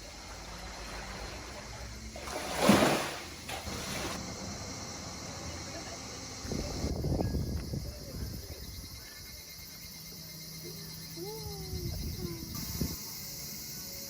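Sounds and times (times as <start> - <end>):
sea water lapping: 0.0 - 4.2.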